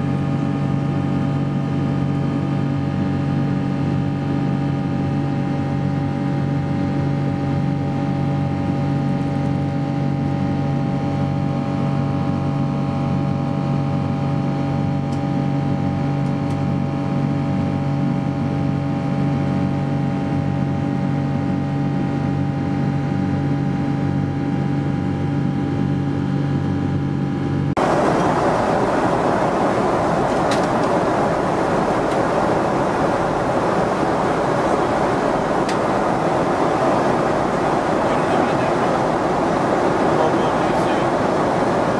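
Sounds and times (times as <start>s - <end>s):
airliner engines droning: 27.8s - 41.9s
rough rushing noise: 27.8s - 41.9s.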